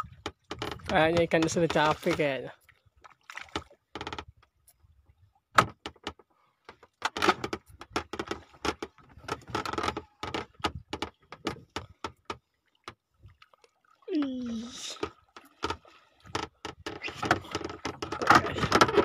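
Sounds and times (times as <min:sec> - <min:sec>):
fishing gear clicks and rattles: 0:00.0 - 0:02.5, 0:05.6 - 0:12.4, 0:14.2 - 0:19.0.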